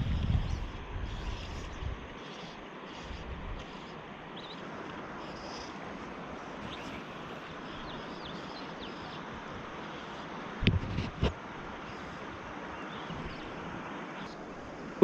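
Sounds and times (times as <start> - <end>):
faint bird chirps: 0.2 - 5.8, 6.6 - 9.3.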